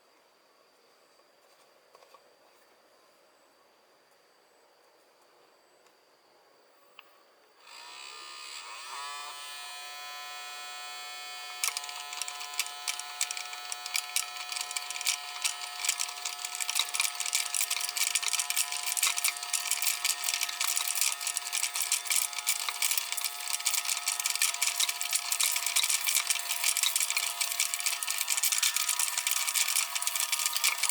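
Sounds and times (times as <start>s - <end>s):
small motor high whine: 7.6s - 30.9s
kernels rattling against blade: 11.6s - 30.9s.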